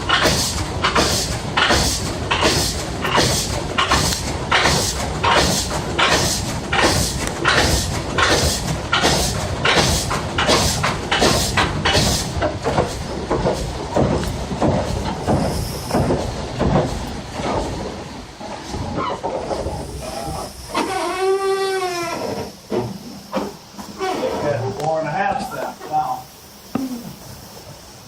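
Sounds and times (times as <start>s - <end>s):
saw rasping through log: 0.2s - 12.9s.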